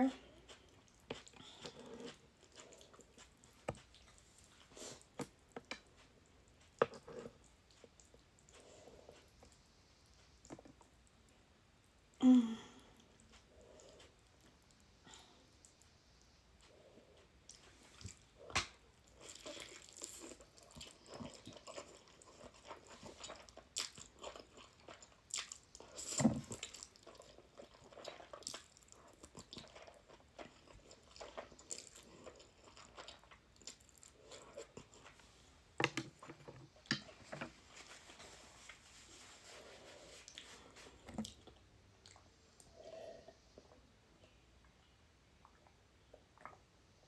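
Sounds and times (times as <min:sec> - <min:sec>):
chewing noodles: 0:00.0 - 0:11.4, 0:13.0 - 0:35.5, 0:45.4 - 0:46.7.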